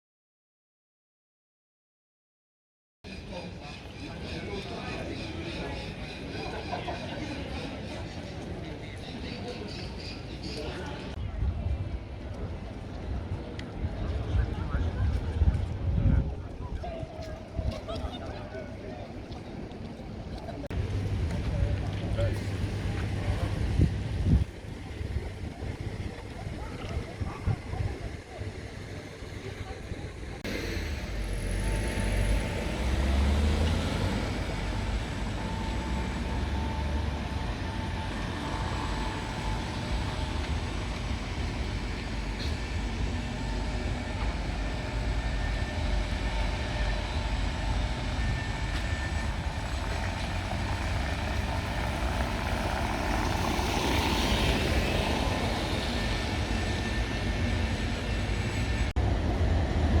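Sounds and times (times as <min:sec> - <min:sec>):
city traffic rumble: 0:03.1 - 1:00.0
vehicles passing: 0:17.6 - 1:00.0.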